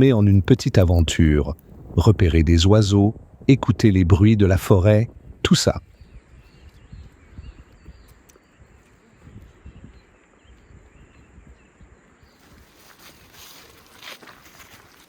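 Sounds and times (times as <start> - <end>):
songbirds chirping faintly: 3.6 - 15.0.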